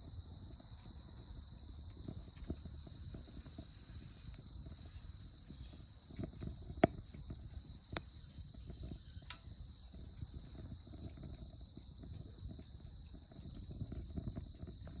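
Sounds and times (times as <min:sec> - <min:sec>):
wood fire crackling: 0:00.4 - 0:15.0
sharp pops from fire: 0:01.9 - 0:11.4.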